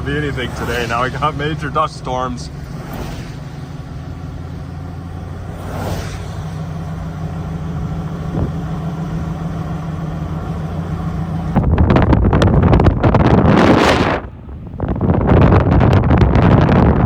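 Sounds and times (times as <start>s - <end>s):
vehicle engine and road drone: 0.0s - 17.0s
wind buffeting microphone: 6.5s - 10.4s, 11.0s - 17.0s.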